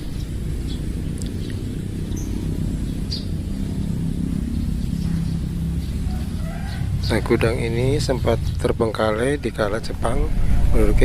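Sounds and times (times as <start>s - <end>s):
high bird chirps: 0.0s - 9.6s
faint low hum: 0.0s - 11.0s
steady low rumble: 0.0s - 11.0s.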